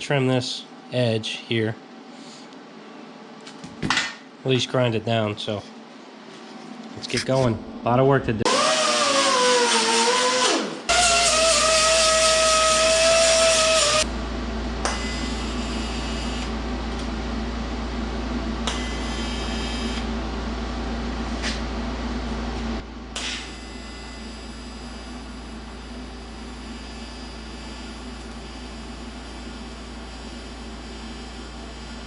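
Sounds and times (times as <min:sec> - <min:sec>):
machine hum: 0:04.3 - 0:32.0
grinding on sheet steel: 0:08.5 - 0:14.1.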